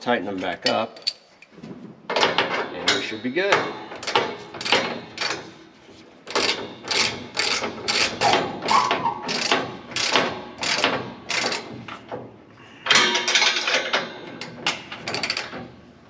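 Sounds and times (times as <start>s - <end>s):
hand ratchet strokes: 3.6s - 5.6s, 6.3s - 12.1s, 12.9s - 15.7s.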